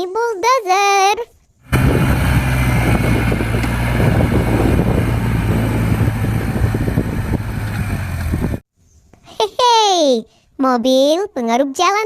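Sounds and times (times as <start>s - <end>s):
heavy vehicle engine humming: 1.7s - 8.6s.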